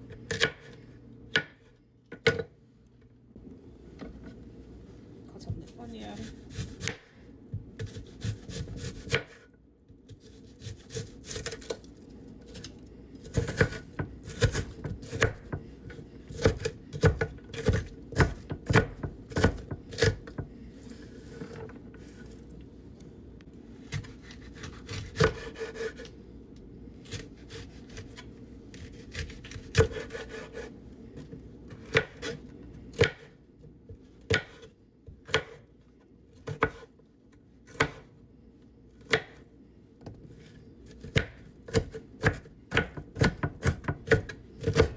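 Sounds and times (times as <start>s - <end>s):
knife chopping on cutting board: 5.6s - 7.0s, 7.6s - 9.4s, 12.5s - 15.6s, 16.3s - 20.5s, 23.9s - 26.1s, 28.8s - 30.7s, 31.7s - 33.3s, 34.3s - 35.6s, 36.4s - 36.9s, 37.7s - 38.0s, 39.0s - 39.4s, 40.9s - 44.9s.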